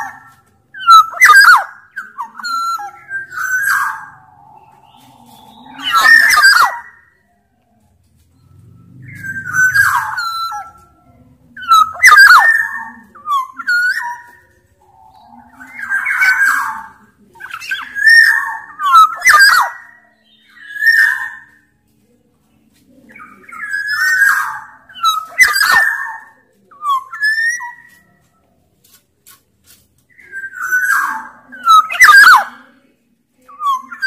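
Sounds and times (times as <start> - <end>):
harsh grating bird notes: 0.0 - 7.0, 8.4 - 11.0, 11.6 - 21.7, 23.1 - 28.2
bird whistling song: 0.0 - 7.2, 8.4 - 11.0, 11.6 - 21.7, 23.1 - 28.2, 30.1 - 32.6, 33.5 - 34.0.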